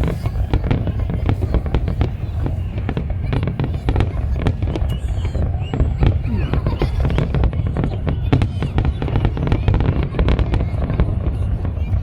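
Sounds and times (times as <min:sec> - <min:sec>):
fireworks bangs and crackles: 0:00.0 - 0:12.0.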